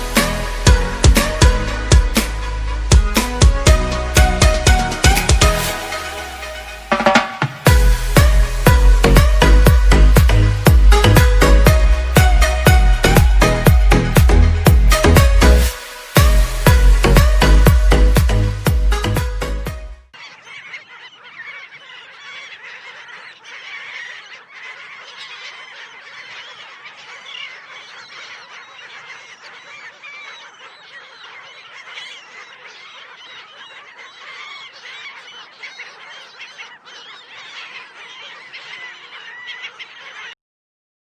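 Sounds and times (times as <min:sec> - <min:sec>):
flock of birds chattering: 0:20.2 - 0:40.4.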